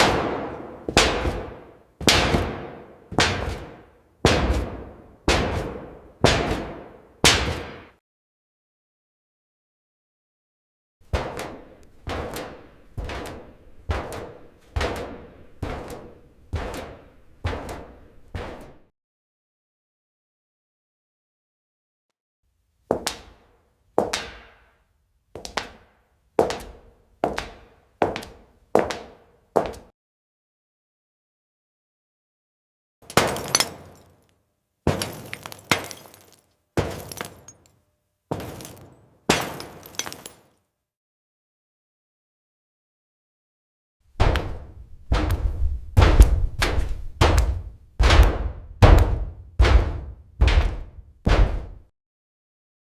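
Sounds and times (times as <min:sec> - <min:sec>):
heavy footsteps on metal floor: 0:00.0 - 0:07.8, 0:11.0 - 0:18.9, 0:25.4 - 0:29.9, 0:34.9 - 0:37.5, 0:38.3 - 0:40.4, 0:44.2 - 0:51.9.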